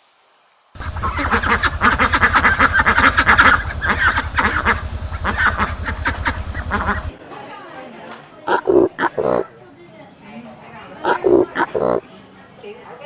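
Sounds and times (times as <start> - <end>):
low pulsing hum: 0.8 - 7.1
flock of birds calling: 0.8 - 7.2, 8.5 - 9.5, 11.0 - 12.1.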